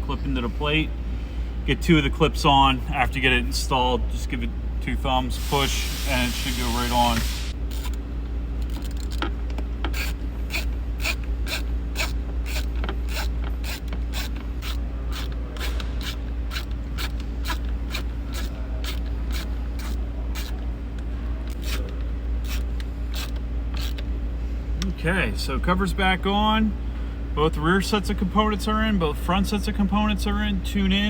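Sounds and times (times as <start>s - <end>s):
steady low hum: 0.0s - 31.0s
ratcheting screwdriver clicking: 22.4s - 24.1s.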